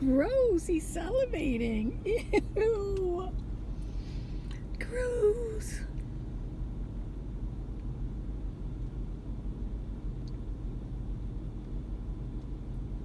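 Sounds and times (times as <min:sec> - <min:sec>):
car cabin rumble: 0:00.0 - 0:06.6.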